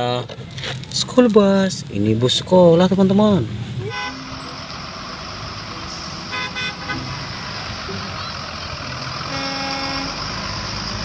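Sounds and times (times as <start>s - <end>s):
horn toots: 3.8s - 4.7s, 5.9s - 7.3s, 9.2s - 10.4s.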